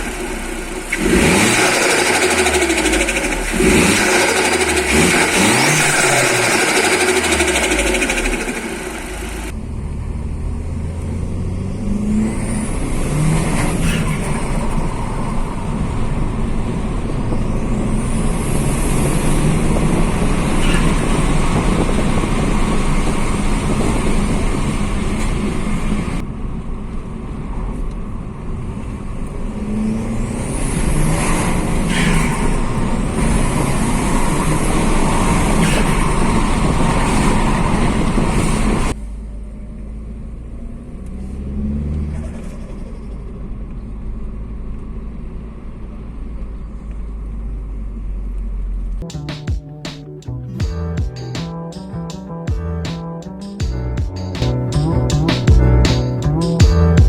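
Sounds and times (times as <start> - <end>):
car engine accelerating: 0.0 - 57.0.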